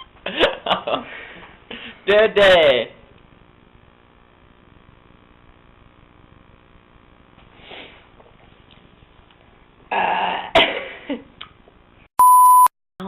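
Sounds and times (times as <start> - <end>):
person burping: 9.9 - 10.8
short electronic beep: 12.2 - 12.7.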